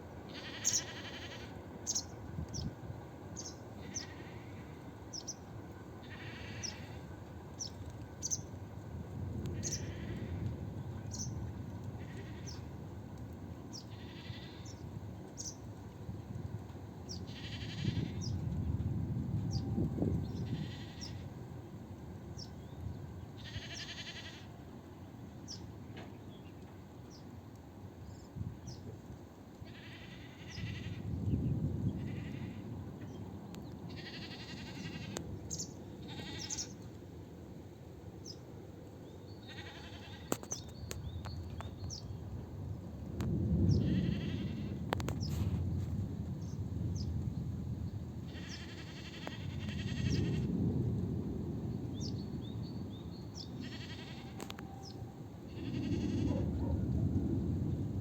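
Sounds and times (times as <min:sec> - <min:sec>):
fluttering animal calls: 0:00.3 - 0:02.0, 0:06.0 - 0:07.0, 0:33.9 - 0:36.8, 0:39.5 - 0:40.7, 0:48.3 - 0:50.5, 0:53.6 - 0:57.0.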